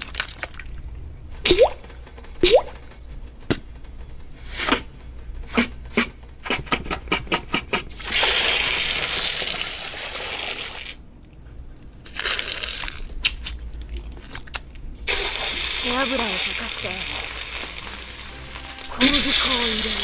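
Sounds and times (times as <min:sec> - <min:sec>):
beatboxed hiss: 0:04.4 - 0:04.9, 0:05.5 - 0:09.6, 0:15.1 - 0:18.1, 0:19.0 - 0:20.0
beatboxed mouth clicks: 0:05.5 - 0:07.9.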